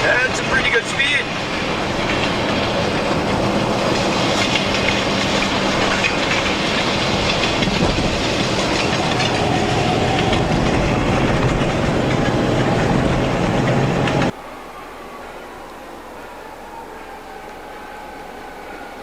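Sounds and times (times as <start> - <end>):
wheels clattering over rail joints: 0.0 - 14.4
freight train rolling by: 0.0 - 19.0.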